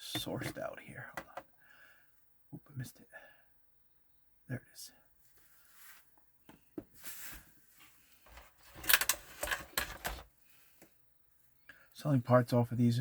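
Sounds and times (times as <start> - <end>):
handling clicks and rubbing: 0.0 - 1.5, 8.2 - 10.3
sharp clicks and rattles: 8.3 - 10.2.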